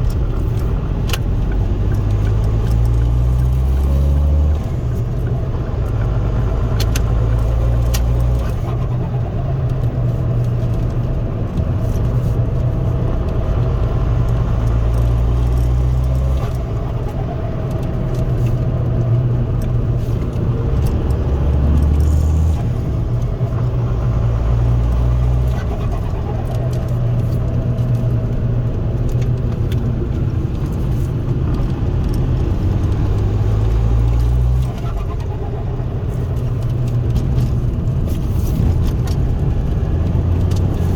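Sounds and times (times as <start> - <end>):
diesel car engine: 0.0 - 40.9
road rumble: 0.0 - 40.9.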